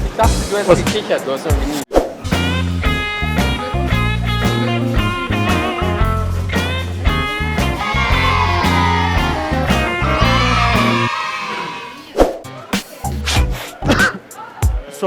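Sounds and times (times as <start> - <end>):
bass line: 2.2 - 11.1
rock music with guitar: 2.2 - 11.1
slowly falling guitar line: 2.3 - 11.2.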